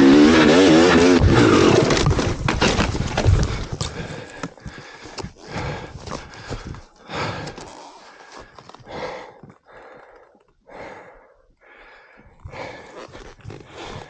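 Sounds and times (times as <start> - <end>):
person breathing heavily: 3.2 - 14.0.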